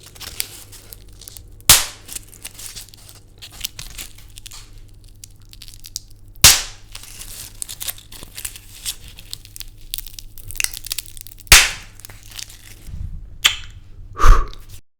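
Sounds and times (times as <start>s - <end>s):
wood crackling and crunching: 0.0s - 12.9s
sticks snapping: 0.2s - 2.8s, 5.6s - 8.0s, 9.4s - 12.8s.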